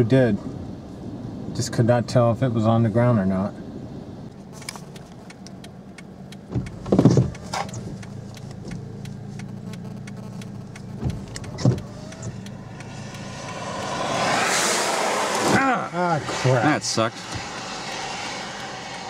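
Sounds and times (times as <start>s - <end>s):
car engine hum: 0.0s - 19.0s
sharp ticks: 4.3s - 15.5s, 17.2s - 19.0s
loud thumps: 6.5s - 15.6s.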